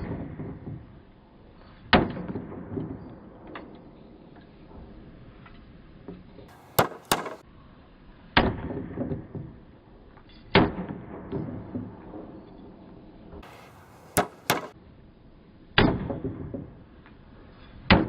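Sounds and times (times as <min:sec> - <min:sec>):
hammer striking a nail: 0:06.5 - 0:07.4, 0:14.1 - 0:14.8.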